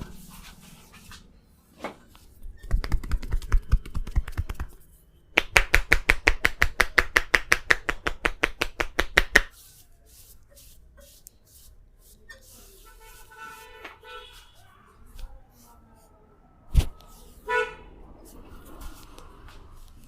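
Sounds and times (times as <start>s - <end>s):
rhythmic hand strikes massage: 2.6s - 4.8s, 5.4s - 9.5s.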